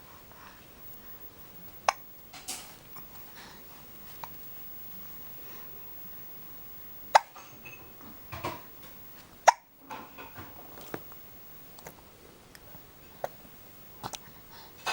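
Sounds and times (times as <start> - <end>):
baby hiccupping: 7.1 - 7.4, 9.4 - 9.7.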